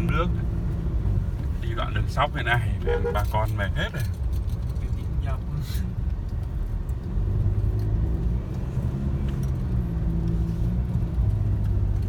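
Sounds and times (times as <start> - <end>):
vehicle engine drone and road rumble: 0.0 - 12.0
light rattles and clicks: 3.2 - 12.0.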